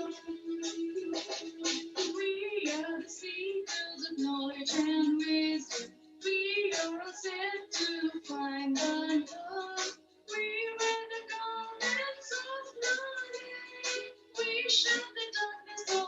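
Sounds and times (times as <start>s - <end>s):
children singing an anthem: 8.7s - 16.0s.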